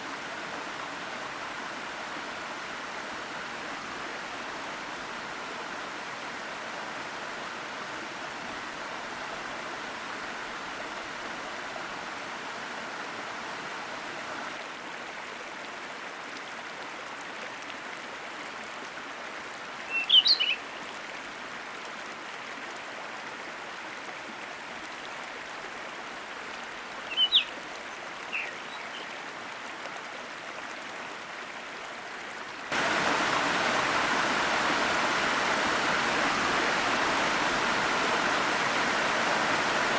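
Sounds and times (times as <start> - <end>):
waterfall and stream rushing: 0.0 - 39.9
bird chirping: 19.9 - 20.6, 27.1 - 27.6, 28.3 - 29.1.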